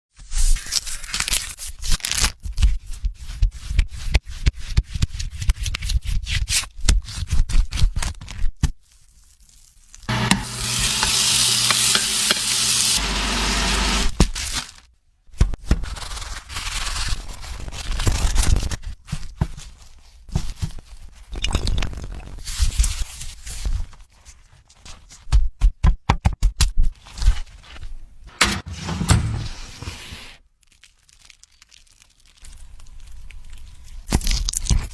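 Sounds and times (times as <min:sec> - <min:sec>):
utensils tapping and clicking: 0:10.1 - 0:12.8
food sizzling: 0:10.1 - 0:14.2
clattering and scraping: 0:28.3 - 0:30.4.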